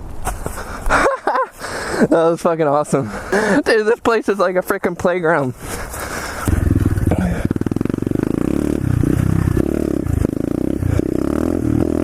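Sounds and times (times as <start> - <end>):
pit bike engine revving: 6.2 - 12.0.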